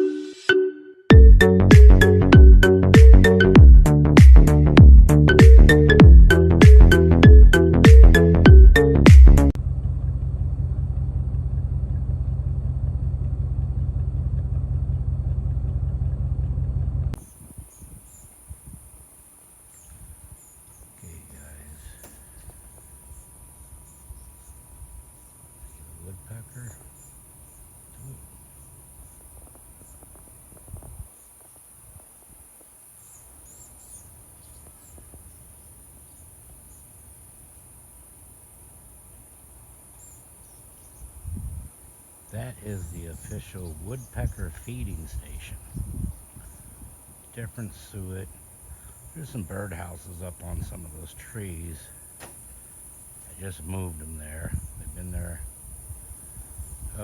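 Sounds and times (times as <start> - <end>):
engine idling: 9.5 - 17.2, 42.3 - 45.6
high-pitched insect chorus: 17.2 - 57.0.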